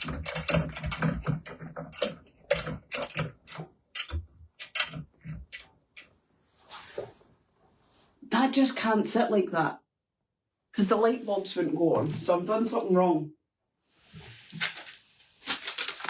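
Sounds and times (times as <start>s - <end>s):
parts clicking and knocking: 0.0s - 6.2s
soft rustle: 6.4s - 8.2s, 13.9s - 16.0s.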